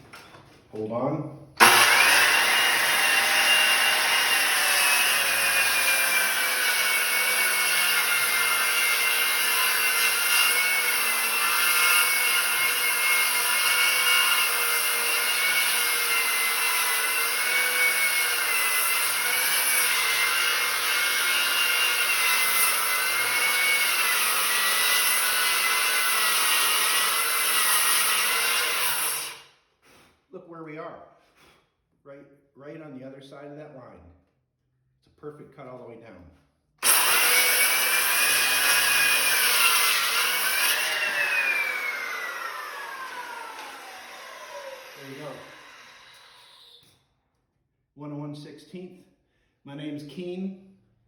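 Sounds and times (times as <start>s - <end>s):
circular saw cutting wood: 1.6s - 29.5s, 36.8s - 46.8s.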